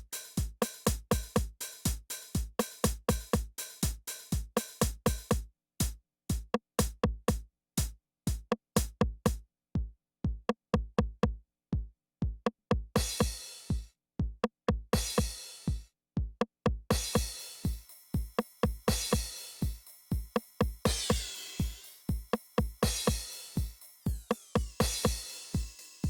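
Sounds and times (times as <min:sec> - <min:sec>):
drum machine pattern: 0:00.0 - 0:09.4, 0:12.3 - 0:26.0
hissing cymbal hits: 0:17.6 - 0:26.0.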